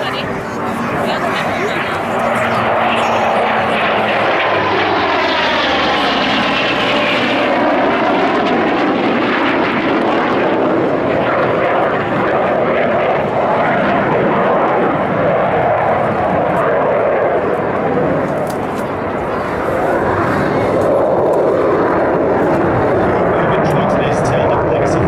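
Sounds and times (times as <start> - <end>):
falling jet whine: 0.0 - 9.2
jet roar: 0.0 - 25.0.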